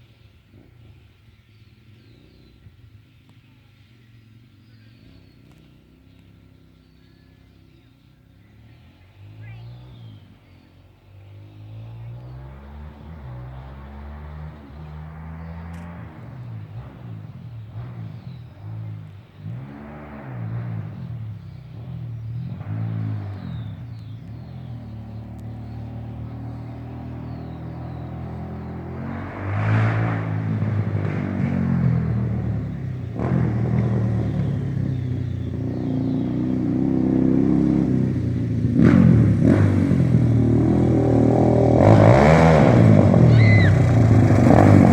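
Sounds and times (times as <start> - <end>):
quad engine revving: 11.6 - 44.9.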